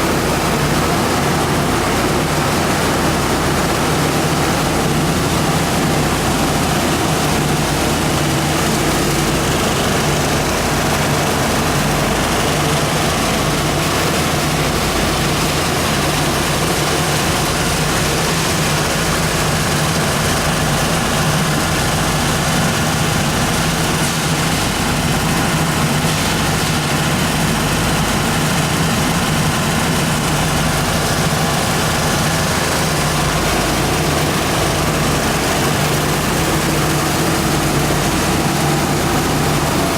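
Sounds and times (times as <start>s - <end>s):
machine running with low hum: 0.0s - 39.9s.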